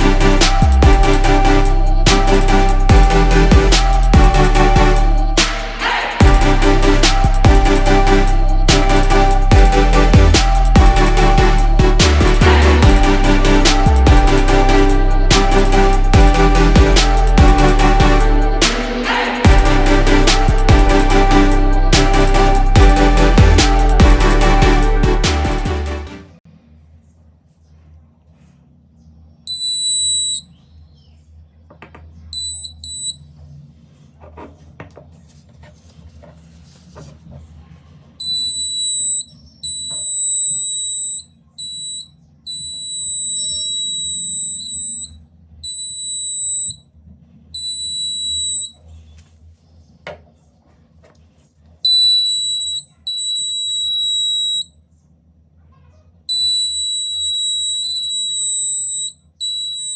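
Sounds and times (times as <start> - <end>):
high-pitched buzzer tone: 38.2 - 46.8, 47.6 - 48.8, 51.9 - 54.7, 56.3 - 59.9.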